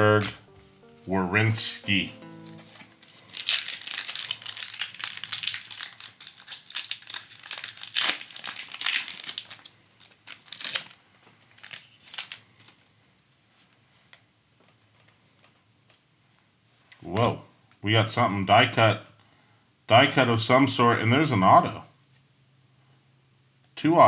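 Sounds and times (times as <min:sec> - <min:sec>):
foil wrapper tearing and crinkling: 0:02.2 - 0:12.9.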